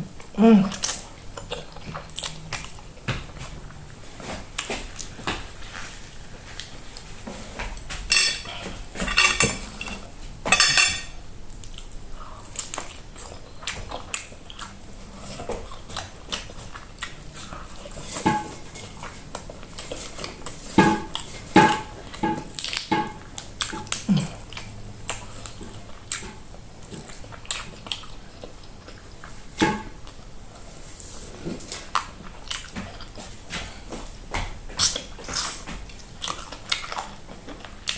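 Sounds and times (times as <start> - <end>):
chewing food: 0.0 - 10.1, 11.5 - 37.9
cutlery clattering on a plate: 8.1 - 11.2.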